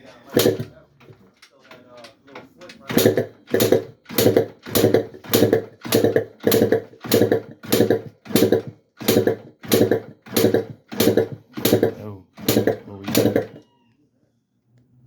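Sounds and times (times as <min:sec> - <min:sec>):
engine turning over in pulses: 0:00.0 - 0:13.6.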